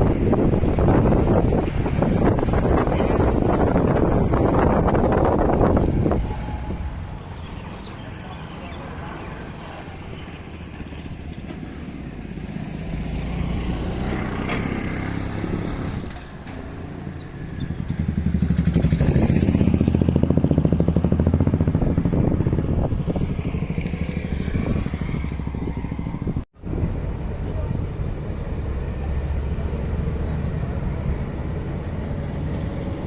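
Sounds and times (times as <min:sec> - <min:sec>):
motorcycle engine: 0:00.0 - 0:26.4
road traffic: 0:00.0 - 0:33.0.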